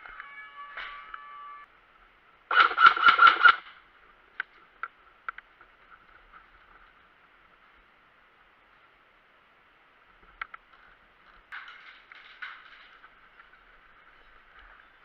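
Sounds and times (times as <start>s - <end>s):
airsoft gun shots: 2.5s - 3.7s.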